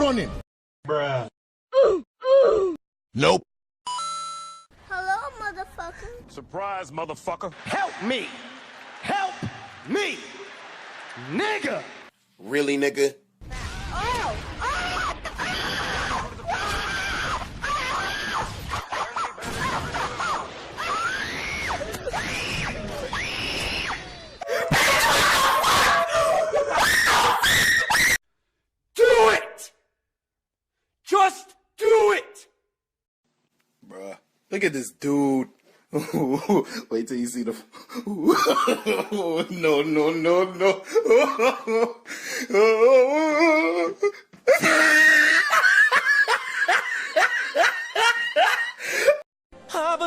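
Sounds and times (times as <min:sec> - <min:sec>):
person laughing: 0:38.0 - 0:39.9, 0:40.5 - 0:49.2
person screaming: 0:42.5 - 0:45.6.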